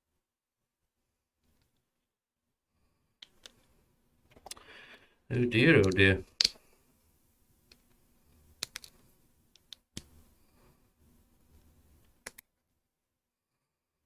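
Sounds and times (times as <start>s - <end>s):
plastic toy bricks clicking: 5.8s - 6.6s, 8.6s - 9.0s.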